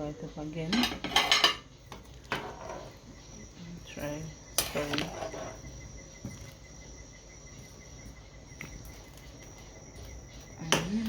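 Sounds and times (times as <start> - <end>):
insects chirping: 0.0 - 11.0.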